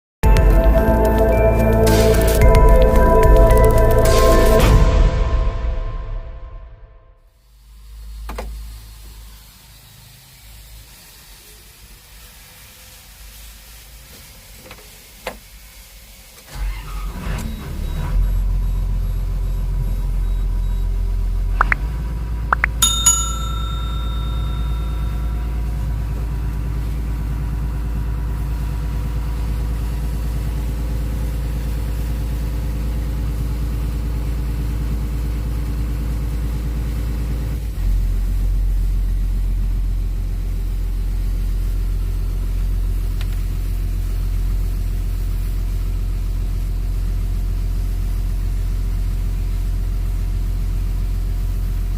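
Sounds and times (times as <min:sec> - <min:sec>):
bell-like ringing tone: 0:00.2 - 0:07.0, 0:22.6 - 0:25.9
excavator diesel engine running: 0:16.5 - 0:40.3.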